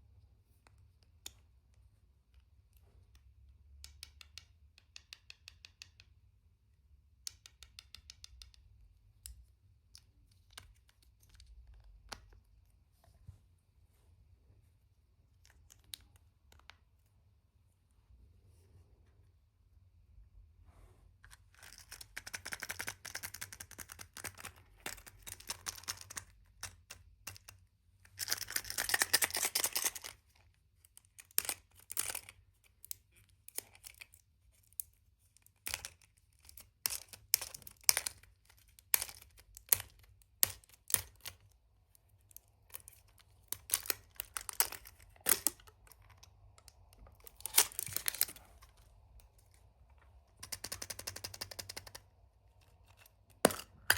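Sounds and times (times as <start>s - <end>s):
plastic clicks and taps: 3.8s - 6.3s, 7.2s - 12.4s.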